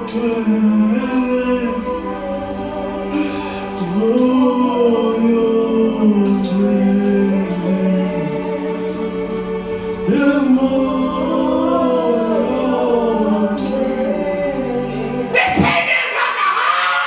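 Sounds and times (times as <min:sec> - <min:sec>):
gospel choir singing: 0:00.0 - 0:17.0.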